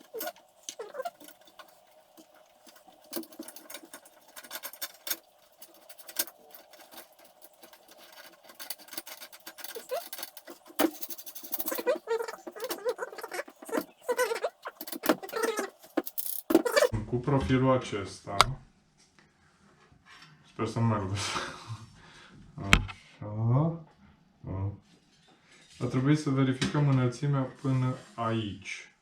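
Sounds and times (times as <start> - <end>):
metal parts clicking and tapping: 0.0 - 16.9
metal parts rattling: 0.0 - 16.9.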